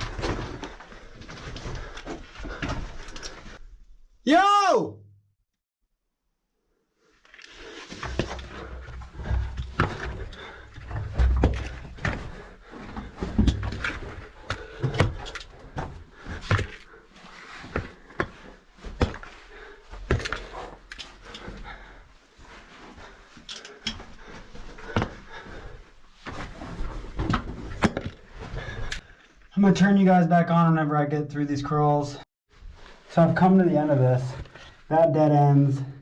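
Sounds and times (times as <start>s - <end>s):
heavy breathing: 7.5s - 26.9s, 28.4s - 29.3s.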